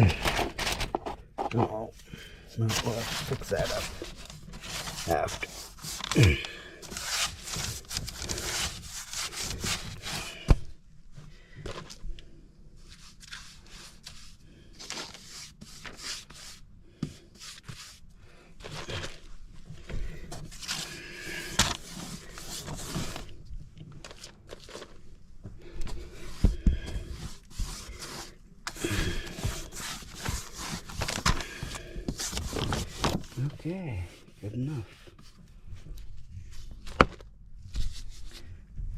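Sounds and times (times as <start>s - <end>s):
paintbrush scraping wooden floor: 27.1s - 28.3s.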